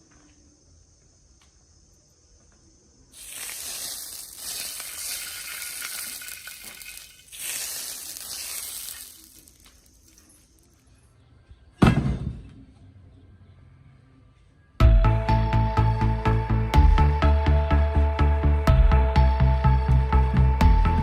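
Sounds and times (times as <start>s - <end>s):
steady hissing: 3.0s - 10.9s.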